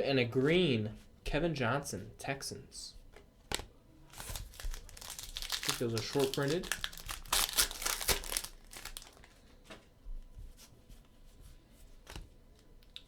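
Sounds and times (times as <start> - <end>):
wrapper tearing and crinkling: 4.1 - 9.4.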